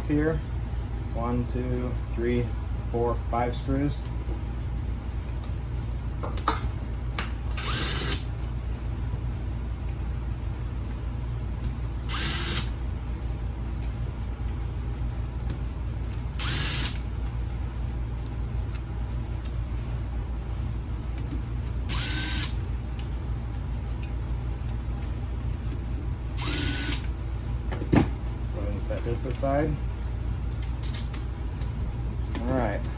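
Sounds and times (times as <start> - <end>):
low hum: 0.0 - 32.9
electric screwdriver whirring: 7.6 - 8.3, 12.0 - 12.8, 16.4 - 17.0, 21.9 - 22.6, 26.4 - 27.1.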